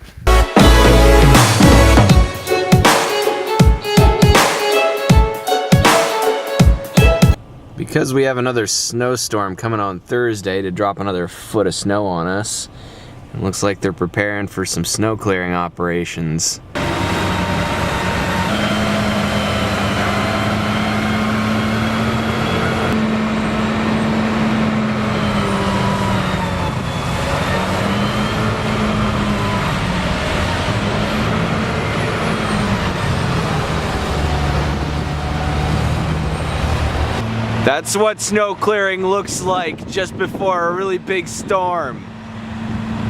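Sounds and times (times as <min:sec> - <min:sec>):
heavy diesel engine running: 0:16.8 - 0:39.2, 0:42.0 - 0:43.0.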